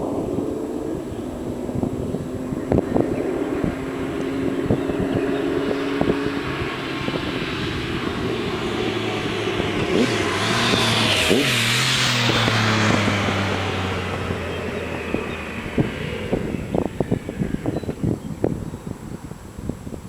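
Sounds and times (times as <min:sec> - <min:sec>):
motorcycle passing by: 0:00.0 - 0:18.5.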